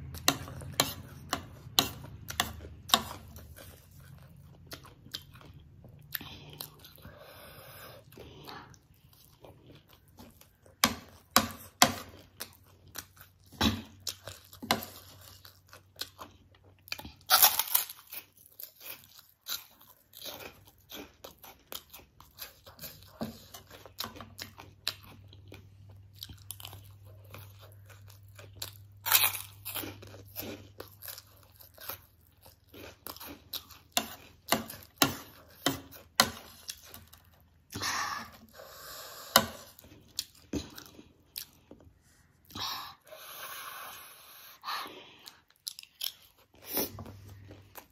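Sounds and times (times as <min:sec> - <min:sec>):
crunching and chewing snack food: 0:00.0 - 0:47.9.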